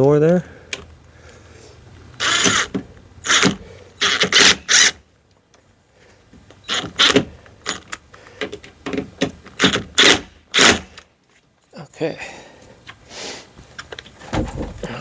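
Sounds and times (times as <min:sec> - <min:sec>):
screws grinding into metal frame: 0:02.2 - 0:05.0.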